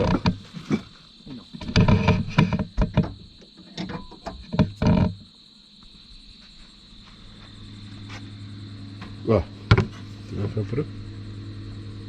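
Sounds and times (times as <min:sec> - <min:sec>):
irregular knocks and clatters: 0:00.0 - 0:05.2, 0:08.9 - 0:10.1
night insects chirring: 0:00.0 - 0:12.0.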